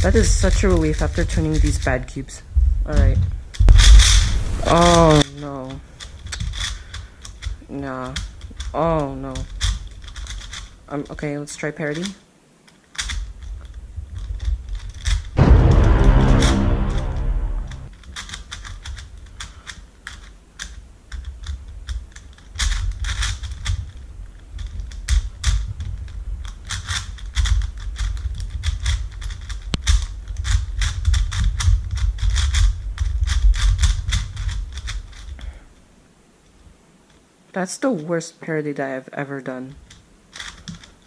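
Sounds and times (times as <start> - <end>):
puzzle cube layers clicking: 6.1 - 10.7, 39.9 - 41.0
low handling rumble: 15.4 - 17.9.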